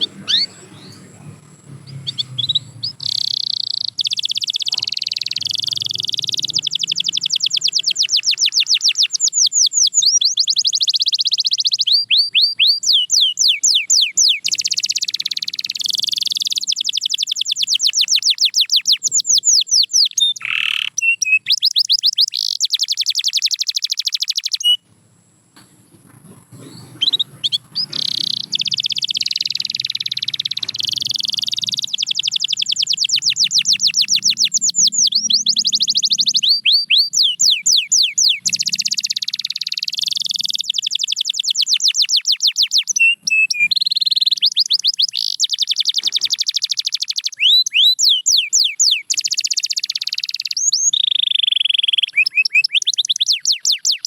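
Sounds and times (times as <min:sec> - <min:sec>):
canary singing trills: 0:00.0 - 0:24.9, 0:25.7 - 0:54.0.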